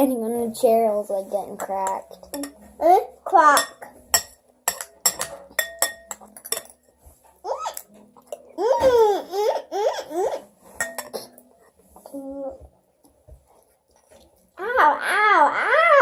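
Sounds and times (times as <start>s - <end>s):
dishes and cutlery clinking: 1.5s - 11.8s.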